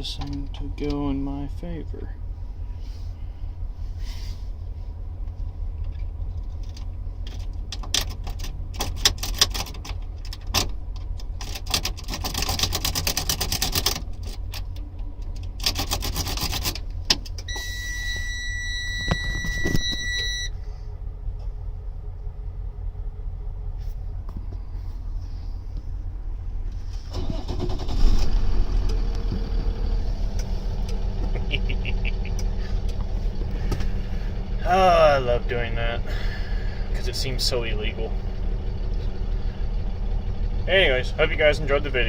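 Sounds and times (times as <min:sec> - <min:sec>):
low rumble: 0:00.0 - 0:07.9, 0:16.8 - 0:42.0.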